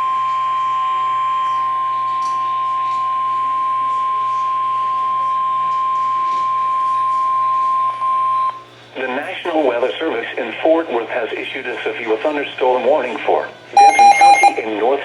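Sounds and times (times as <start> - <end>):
steady alert tone: 13.8 - 14.6.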